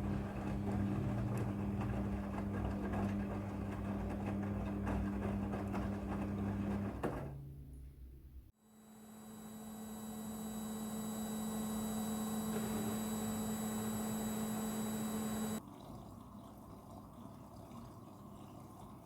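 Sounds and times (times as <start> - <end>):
washing machine hum: 0.0 - 7.9, 8.6 - 19.0
water trickling: 15.6 - 19.0.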